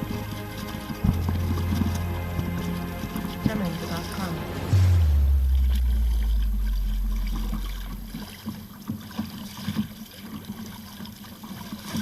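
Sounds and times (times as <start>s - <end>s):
loud low hum: 0.0s - 8.8s
water lapping against kayak hull: 0.0s - 12.0s.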